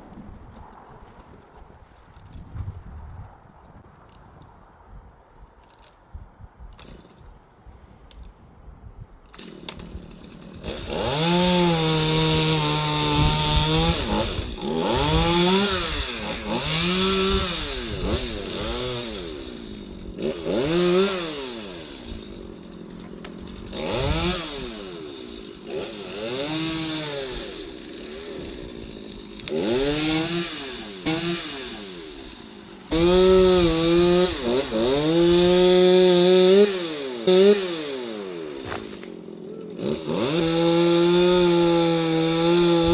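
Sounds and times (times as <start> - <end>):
chainsaw revving: 9.3 - 42.9.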